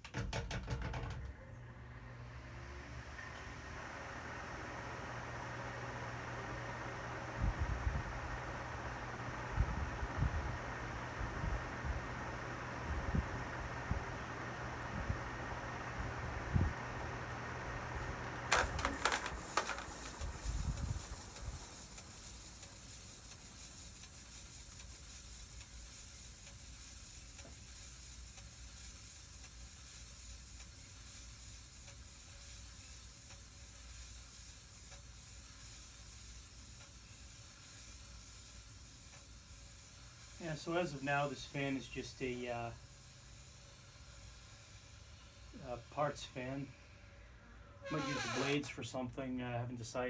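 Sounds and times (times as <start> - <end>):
sharp clicks and knocks: 0.0 - 1.4, 18.5 - 22.7
ceiling fan whirring: 0.1 - 50.0
low motor hum: 1.2 - 22.0.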